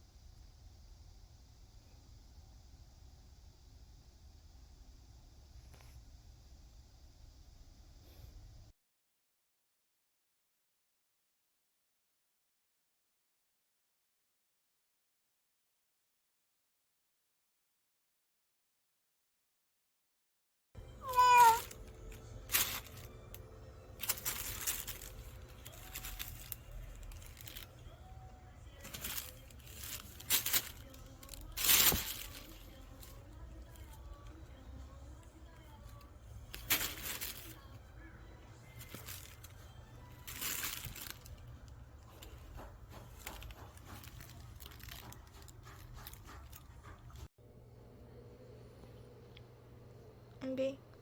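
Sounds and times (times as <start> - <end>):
rustling and crinkling handling: 20.8 - 47.3
cat meowing: 21.0 - 21.8.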